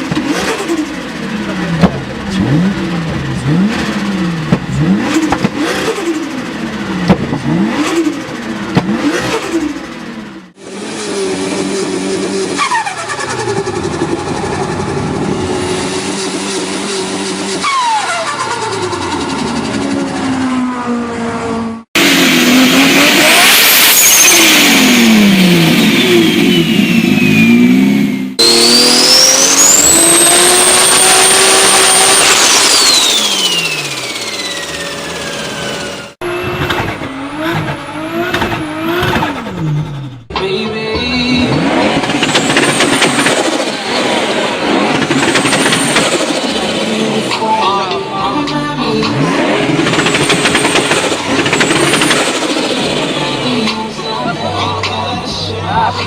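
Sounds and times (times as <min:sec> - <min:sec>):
car engines revving: 0:00.0 - 0:56.0
turbocharger whistle: 0:10.6 - 0:21.4, 0:22.0 - 0:40.3.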